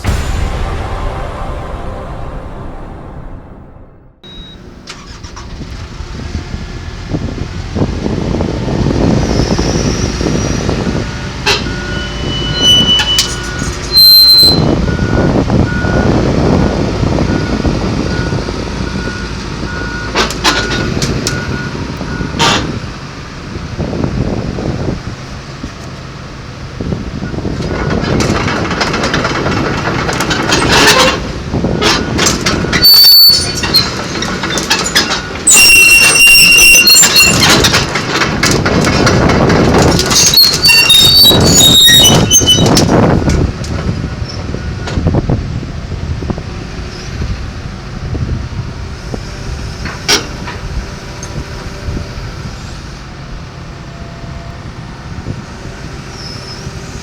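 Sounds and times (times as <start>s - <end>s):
high squealing of steel tracks: 4.2s - 5.9s, 8.8s - 17.2s, 27.3s - 38.4s, 39.0s - 43.5s, 49.0s - 57.0s.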